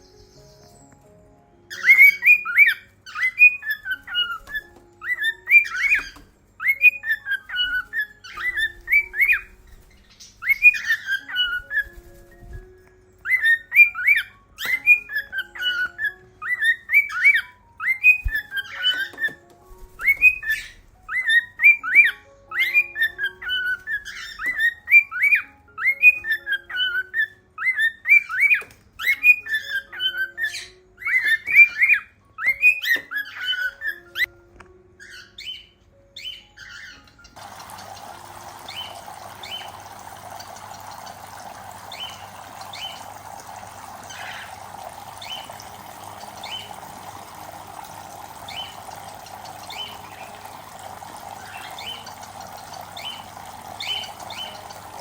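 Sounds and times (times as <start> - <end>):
cockatiel whistling: 1.7 - 9.6, 10.4 - 12.7, 13.3 - 34.3.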